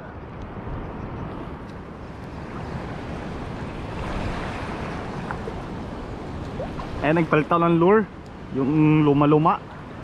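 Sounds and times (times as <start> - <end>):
wind rumbling on microphone: 0.0 - 10.0
surf washing against shore: 1.8 - 10.0.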